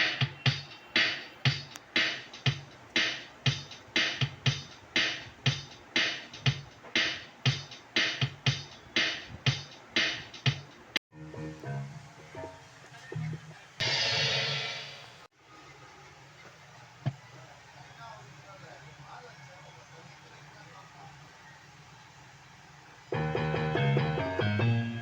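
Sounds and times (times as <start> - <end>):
drum machine beat: 0.0 - 11.0.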